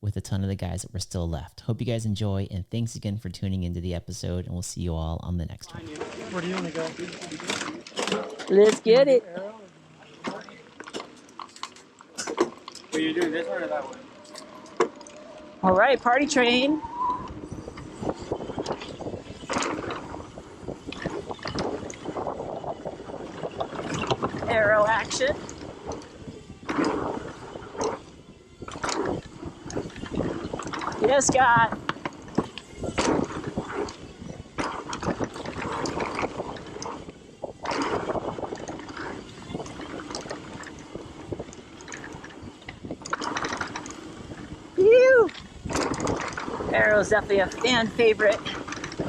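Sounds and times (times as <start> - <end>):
wind buffeting microphone: 15.9 - 49.0
bike clicking and rattling: 25.4 - 44.7, 45.4 - 46.8, 47.6 - 49.0
bike tyres rolling over loose dirt: 33.1 - 44.8.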